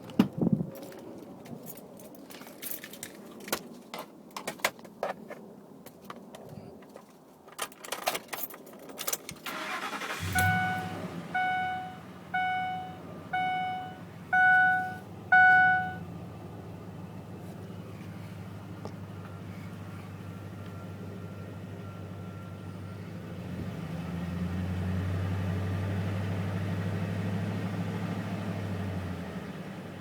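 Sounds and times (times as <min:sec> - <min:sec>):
keys rattling in ignition: 0:00.0 - 0:03.9, 0:06.4 - 0:16.0
car engine cranking and idling: 0:09.3 - 0:30.0
warning chime: 0:09.9 - 0:16.0.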